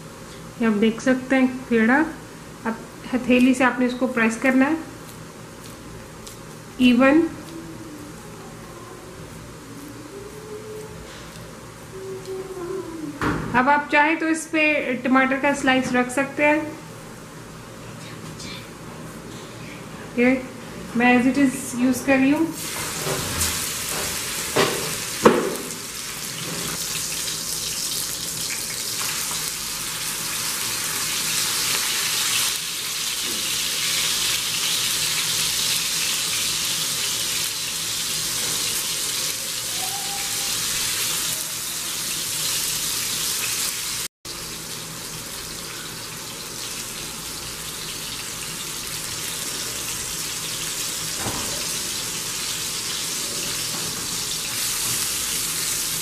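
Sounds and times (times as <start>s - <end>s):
kebab sizzling in oil: 22.6s - 56.0s.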